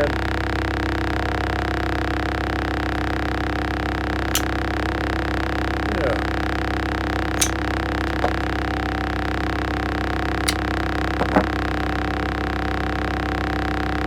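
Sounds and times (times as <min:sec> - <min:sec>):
steady background hum: 0:02.4 - 0:12.3.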